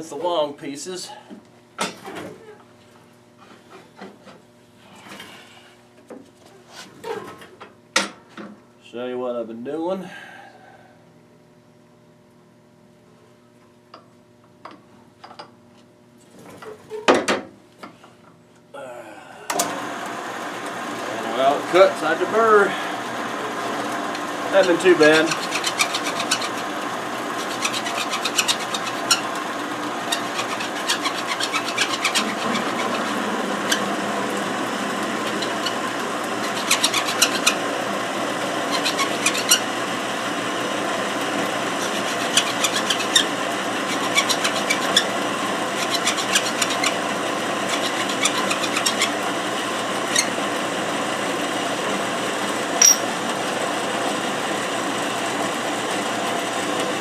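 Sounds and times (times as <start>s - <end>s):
power saw cutting aluminum: 19.6s - 51.7s.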